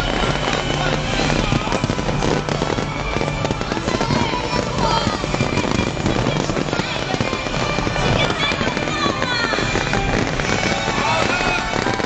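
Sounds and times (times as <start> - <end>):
fireworks crackling and popping: 0.0 - 12.0
music playing: 0.0 - 12.0.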